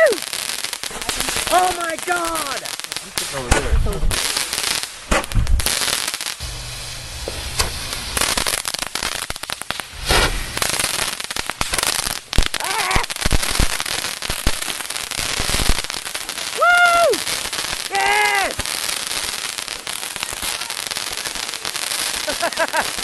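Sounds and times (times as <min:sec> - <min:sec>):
fireworks crackling and banging: 0:00.0 - 0:23.0.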